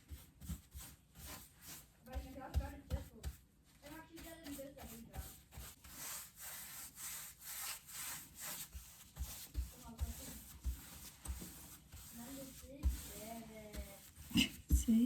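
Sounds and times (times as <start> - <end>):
cloth scrubbing wooden tabletop: 0.0 - 15.0.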